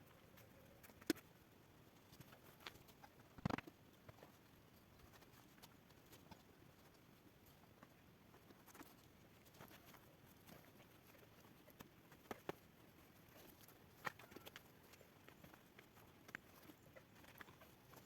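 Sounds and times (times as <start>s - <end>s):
scattered clicks and knocks: 3.4s - 4.2s.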